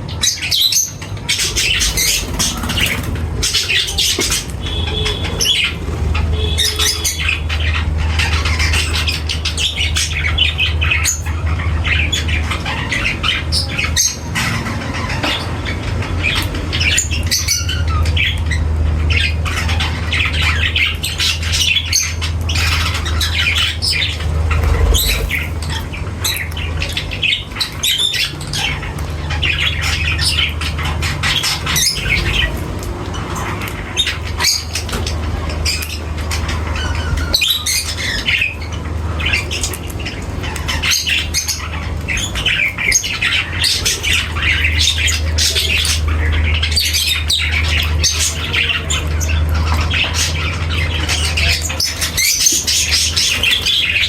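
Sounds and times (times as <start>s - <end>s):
parrots chattering and squawking: 0.0s - 54.0s
low hum: 23.5s - 26.0s.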